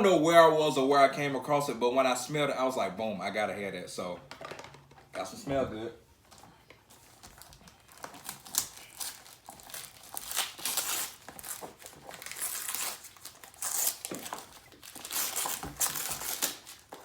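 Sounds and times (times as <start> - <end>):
gift wrapping crinkling: 6.3 - 17.0.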